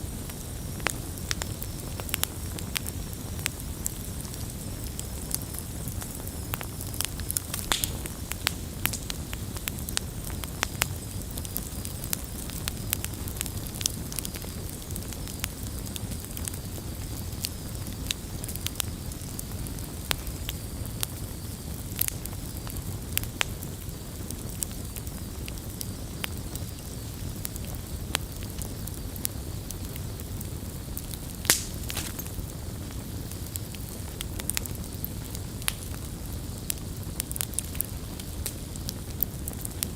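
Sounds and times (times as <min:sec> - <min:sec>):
campfire crackling and popping: 0:00.0 - 0:39.9
low fire rumble: 0:00.0 - 0:39.9.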